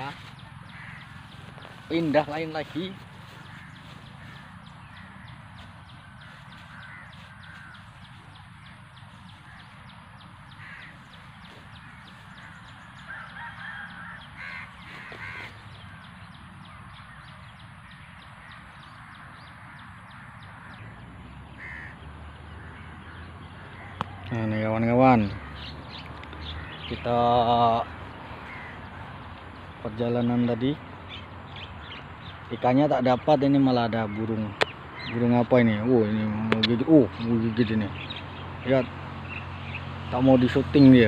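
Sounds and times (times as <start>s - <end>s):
short bird calls: 0.0s - 32.6s.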